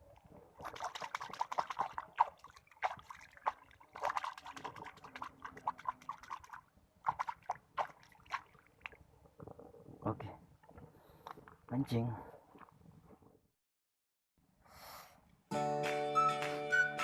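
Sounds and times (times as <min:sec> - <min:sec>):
water sloshing and splashing: 0:00.0 - 0:09.4.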